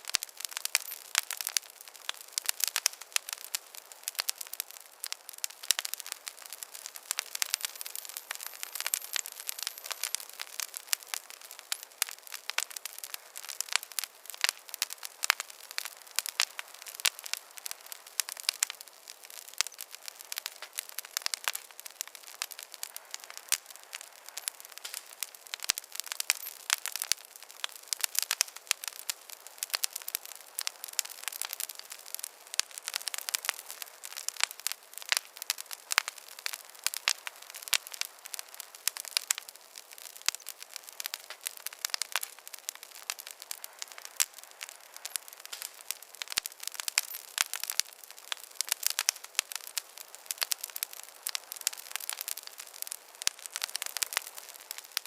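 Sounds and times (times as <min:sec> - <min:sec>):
campfire crackling: 0:00.0 - 0:55.0.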